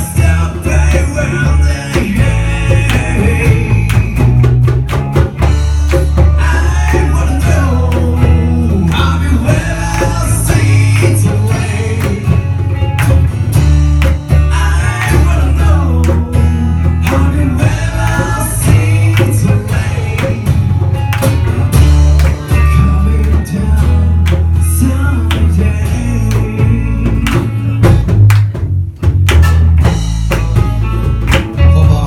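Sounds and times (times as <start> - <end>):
person singing: 0.0 - 4.6, 6.1 - 12.6, 14.3 - 20.7, 22.2 - 27.9, 31.6 - 32.0
live rock band playing: 0.0 - 32.0.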